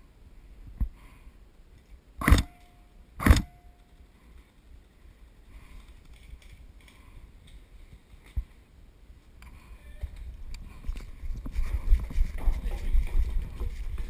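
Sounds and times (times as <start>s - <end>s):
rustling: 1.8s - 14.0s
faint ringing tone: 2.4s - 4.3s.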